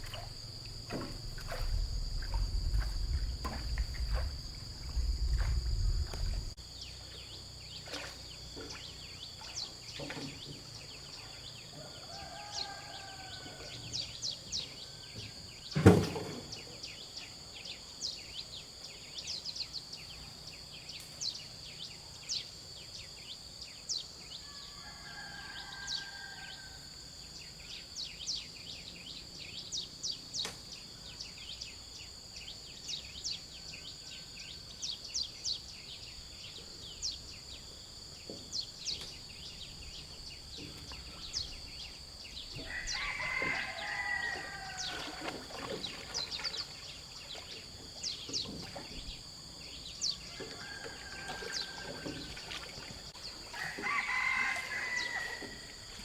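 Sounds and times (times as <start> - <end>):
insect drone: 0.0 - 56.0
rooster crowing: 11.7 - 14.0, 24.4 - 26.9, 42.6 - 45.4, 50.3 - 52.5, 53.5 - 56.0.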